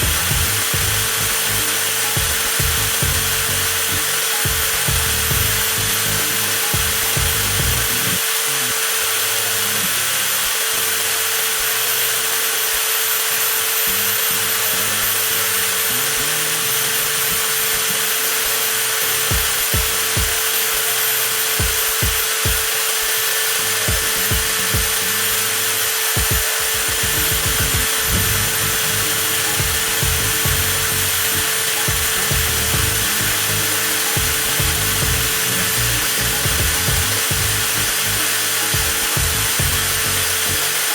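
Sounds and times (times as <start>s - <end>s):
background music: 0.0s - 8.2s, 23.6s - 40.9s
angle grinder motor whining: 0.0s - 40.9s.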